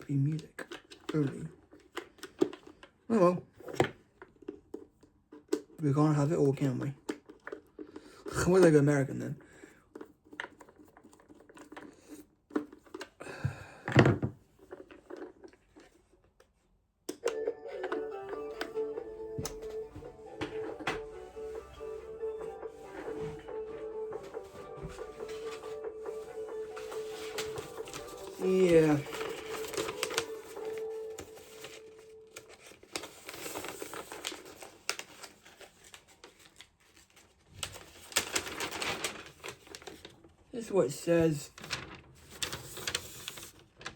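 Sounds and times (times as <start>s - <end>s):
toy packaging crinkling: 6.5s - 13.2s, 26.7s - 43.9s.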